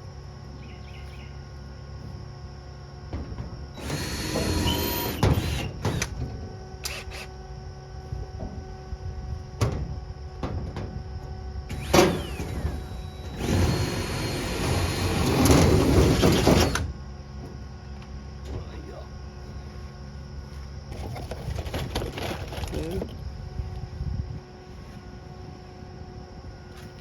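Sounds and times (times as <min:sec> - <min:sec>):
power tool whining: 0:03.7 - 0:09.2, 0:11.1 - 0:17.0.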